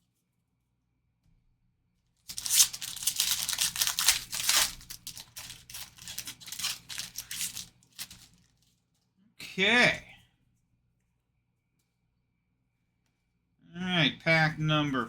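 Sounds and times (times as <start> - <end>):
card pack wrapper tearing: 2.3 - 8.5
wrapper crinkling: 2.3 - 8.8.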